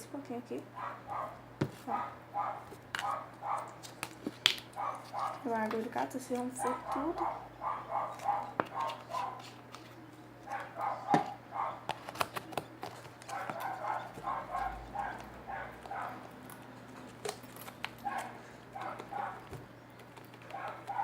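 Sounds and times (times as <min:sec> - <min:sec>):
low fan hum: 0:00.0 - 0:21.0
dog barking: 0:00.8 - 0:03.8, 0:04.8 - 0:05.5, 0:06.6 - 0:09.5, 0:10.4 - 0:11.9, 0:13.3 - 0:16.3, 0:18.0 - 0:19.5, 0:20.5 - 0:21.0.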